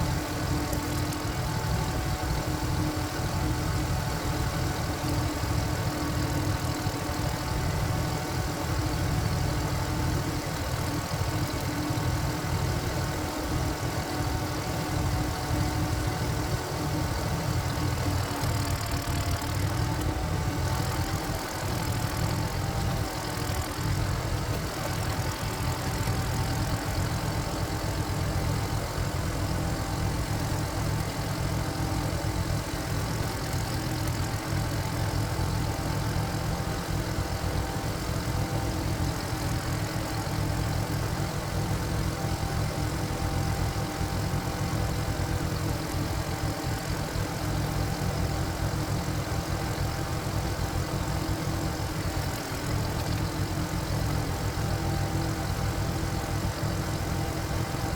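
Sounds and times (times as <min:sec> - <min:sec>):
single-cylinder diesel engine: 0:00.0 - 0:57.9.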